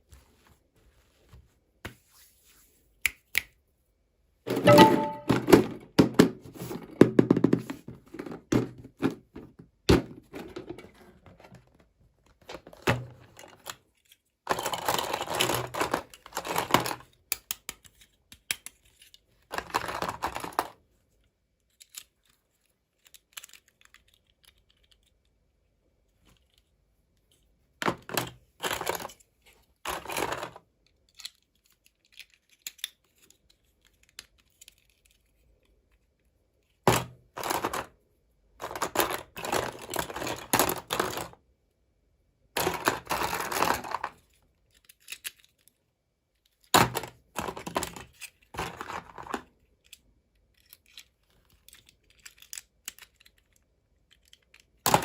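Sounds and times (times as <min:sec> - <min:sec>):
objects thunking down: 0:04.5 - 0:05.8.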